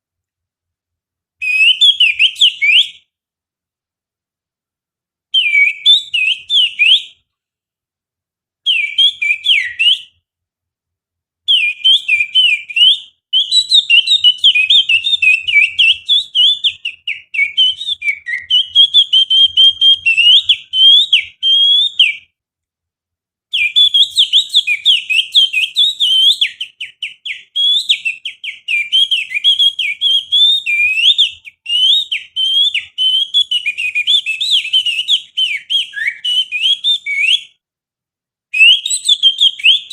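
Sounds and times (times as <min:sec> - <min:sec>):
finger whistling bird song: 0:01.4 - 0:03.2, 0:05.3 - 0:07.3, 0:08.6 - 0:10.3, 0:11.5 - 0:22.4, 0:23.5 - 0:37.6, 0:38.5 - 0:39.9.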